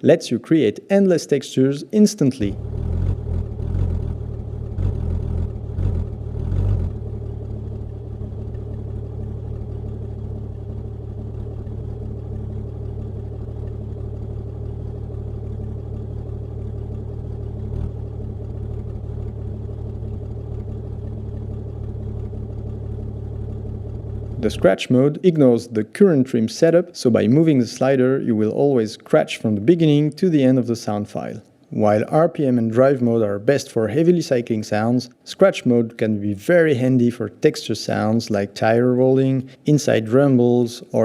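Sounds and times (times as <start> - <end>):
car engine drone: 2.4 - 29.7.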